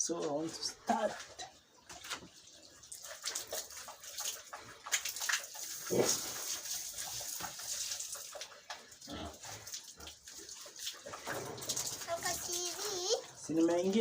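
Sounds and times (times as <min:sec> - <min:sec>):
pigs grunting: 0:05.8 - 0:06.5, 0:09.0 - 0:10.2.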